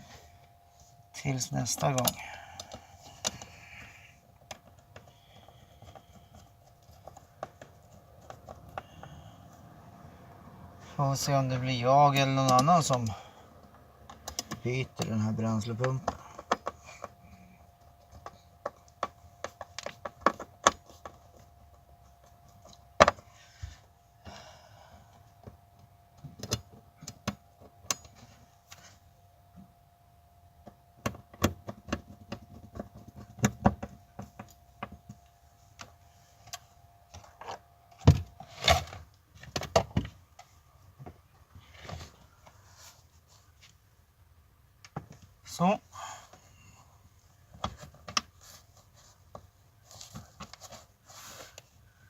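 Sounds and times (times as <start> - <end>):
faint steady hum: 0.0 - 52.0
faint steady whine: 0.0 - 52.0
hand tools clicking and tapping: 15.7 - 17.4.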